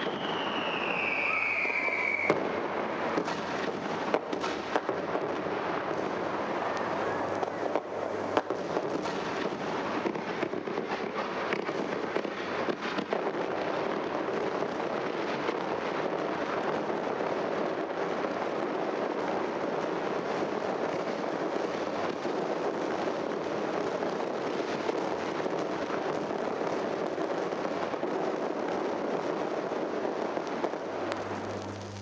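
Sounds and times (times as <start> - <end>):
fireworks crackling: 0.0 - 32.0
low steady hum: 30.9 - 32.0.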